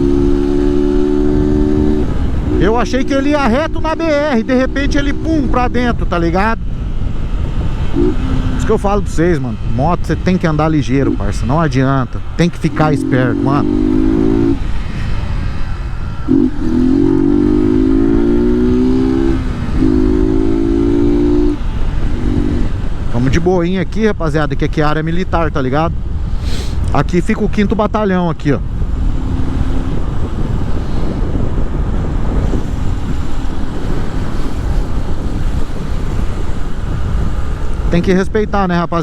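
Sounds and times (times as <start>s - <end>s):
motorcycle engine accelerating: 0.0s - 9.8s, 12.2s - 23.2s, 28.6s - 38.0s
wind rushing over microphone: 0.0s - 39.0s
low rumble: 1.6s - 23.4s
motorcycle engine running: 28.6s - 38.0s.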